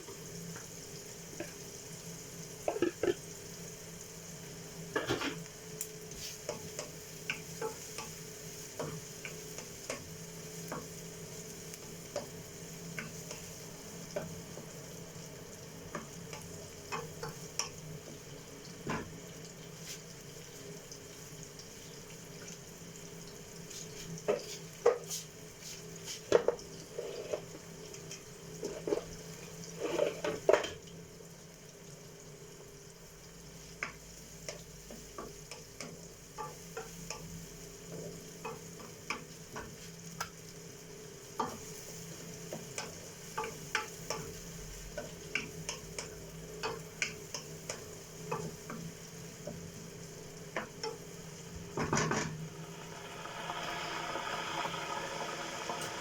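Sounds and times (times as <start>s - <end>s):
food sizzling in a pan: 0.0s - 56.0s
utensil scraping a pan: 23.8s - 27.6s, 29.7s - 30.5s.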